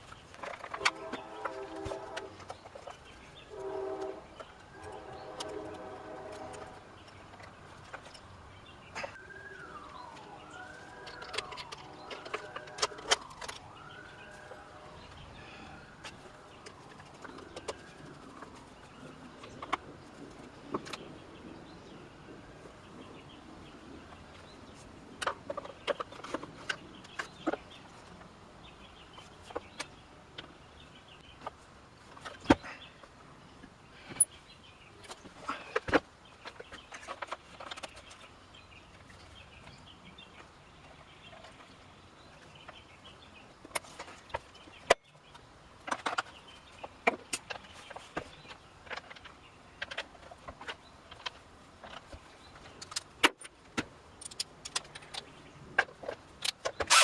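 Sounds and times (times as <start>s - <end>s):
faint siren wailing: 9.0s - 19.8s
metal parts and tools clicking: 54.2s - 57.0s.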